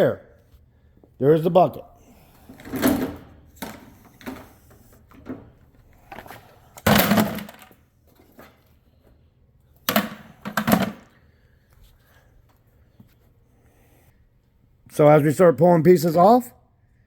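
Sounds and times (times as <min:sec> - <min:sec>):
metal parts clattering in a bucket: 0:06.1 - 0:07.7.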